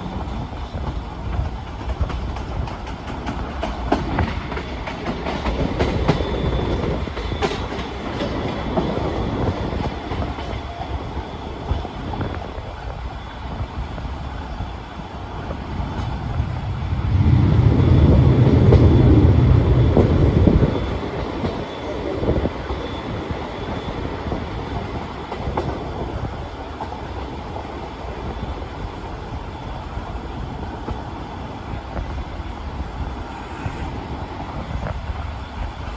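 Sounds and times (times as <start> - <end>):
clickety-clack of rail joints: 0.0 - 35.9
train wheels rumbling on track: 0.0 - 35.9
deep rumble: 15.7 - 21.2.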